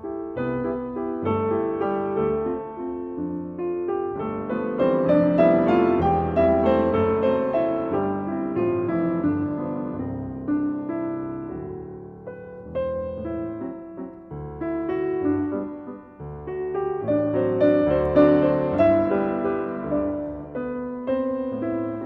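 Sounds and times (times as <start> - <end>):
piano music: 0.0 - 22.0.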